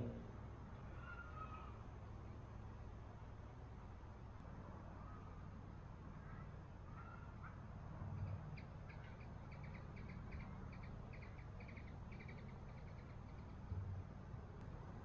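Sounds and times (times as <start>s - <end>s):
brief low hums: 0.0s - 0.3s
faint outdoor rumble: 0.0s - 15.0s
small bird chirping: 8.6s - 13.6s.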